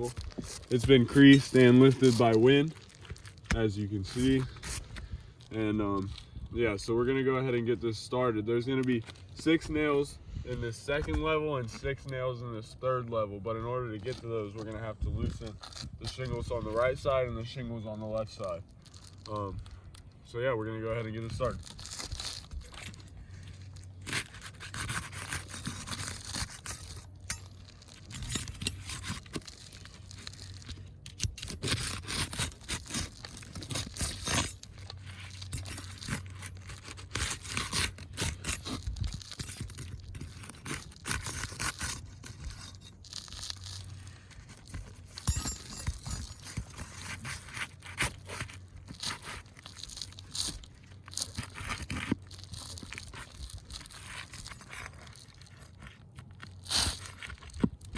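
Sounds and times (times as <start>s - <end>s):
roof shingles scraping and tearing: 0.0s - 5.2s, 20.9s - 57.9s.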